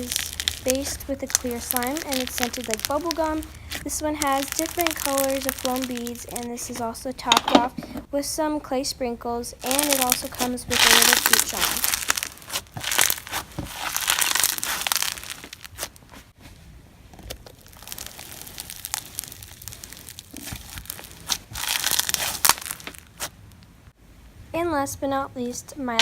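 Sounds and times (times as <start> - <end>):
foam-bead slime crackling: 0.0 - 7.4, 9.6 - 16.3, 17.3 - 23.6.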